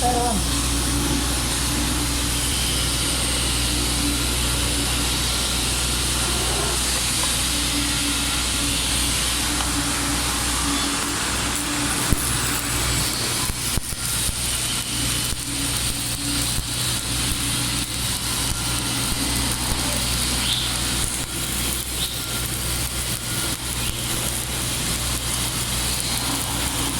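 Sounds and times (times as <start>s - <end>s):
steady low hum: 0.0s - 26.9s
welding arc crackling: 0.0s - 26.9s.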